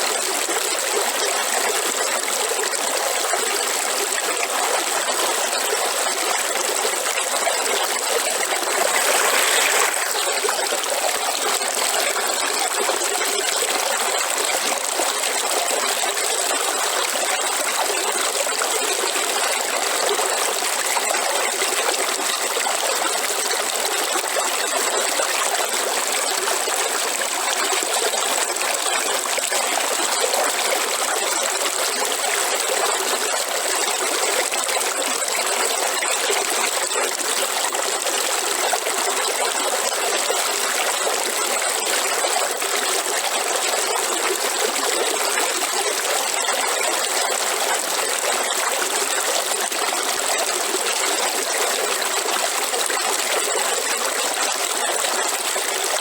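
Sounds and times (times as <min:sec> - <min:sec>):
river water flowing: 0:00.0 - 0:17.2.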